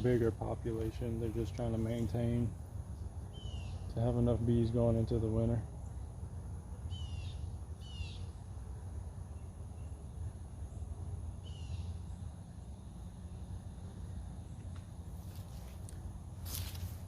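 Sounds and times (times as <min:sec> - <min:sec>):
low background hum: 0:00.0 - 0:17.0
small bird chirping: 0:03.0 - 0:04.0, 0:06.9 - 0:08.4, 0:11.4 - 0:12.2.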